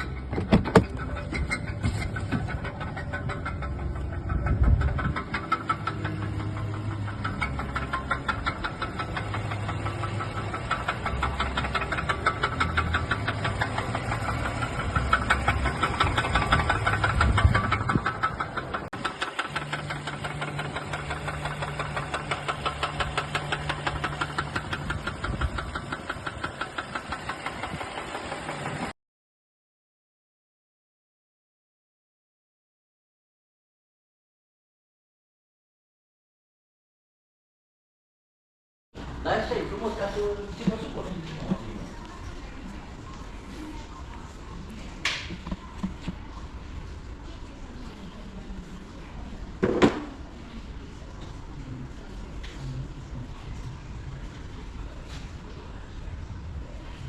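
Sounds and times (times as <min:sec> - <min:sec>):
engine running with rhythmic knock: 0:00.0 - 0:29.0, 0:39.0 - 0:48.0, 0:49.6 - 0:57.0.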